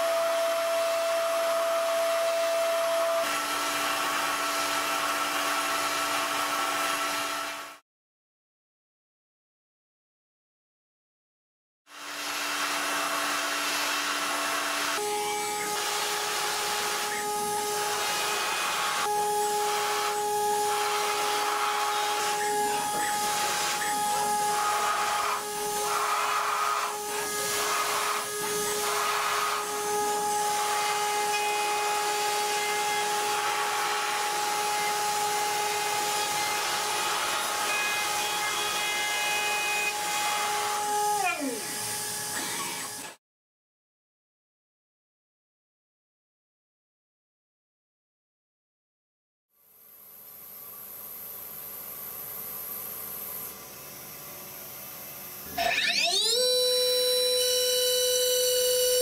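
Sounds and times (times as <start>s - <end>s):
machine tool whining: 14.0s - 43.2s, 55.4s - 59.0s.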